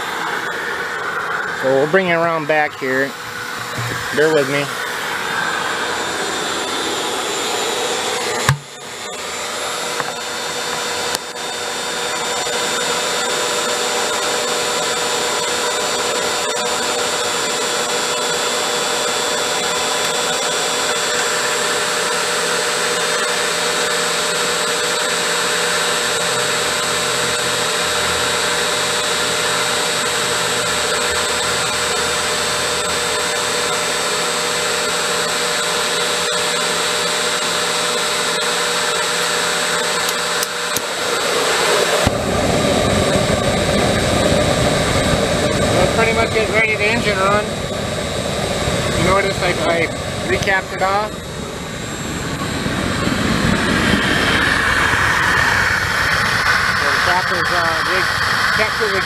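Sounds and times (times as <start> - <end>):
electric blower whining: 0.0 - 59.0
sharp knock: 8.4 - 8.8.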